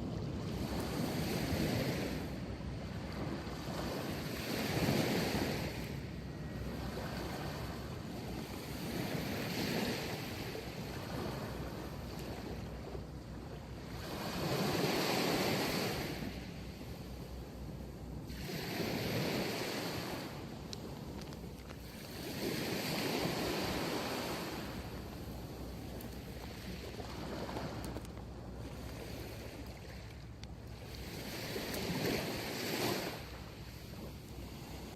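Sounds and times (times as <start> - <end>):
sea waves breaking on beach: 0.0 - 34.9.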